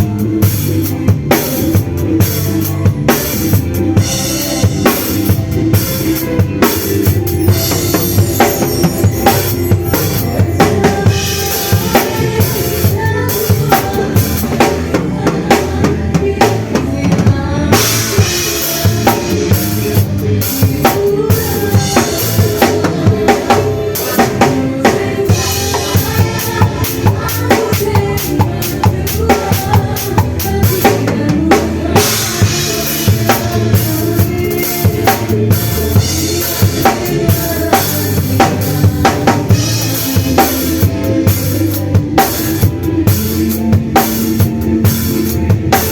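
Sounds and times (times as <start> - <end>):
drum kit playing a steady beat: 0.0 - 45.9
pitched instruments: 4.0 - 13.1.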